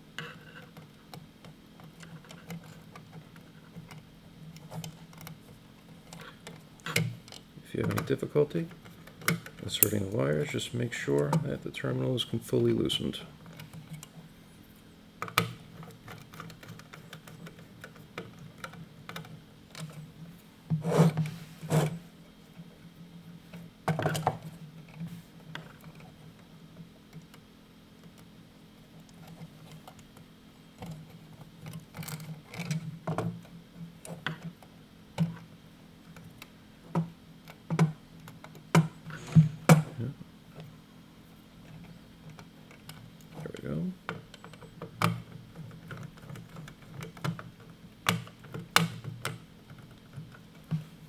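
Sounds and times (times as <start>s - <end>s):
faint steady hum: 0.0s - 51.0s
screwdriver clicking on terminals: 9.1s - 10.4s.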